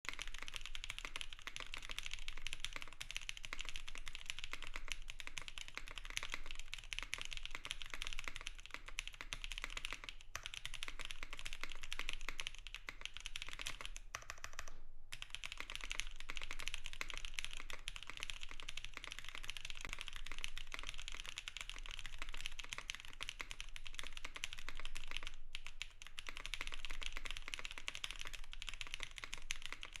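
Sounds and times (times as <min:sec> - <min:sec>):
mechanical keyboard typing: 0:00.1 - 0:30.0.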